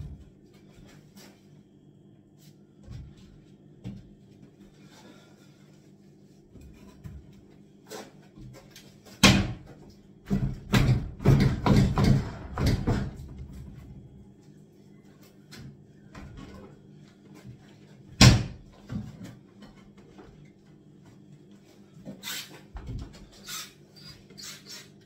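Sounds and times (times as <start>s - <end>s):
wooden cabinets banging and knocking: 9.2s - 13.8s, 18.2s - 19.4s.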